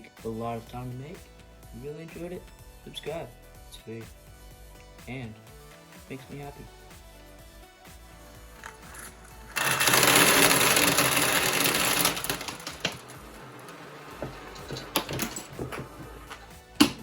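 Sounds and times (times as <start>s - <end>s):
marbles rattling and clattering: 8.9s - 15.8s.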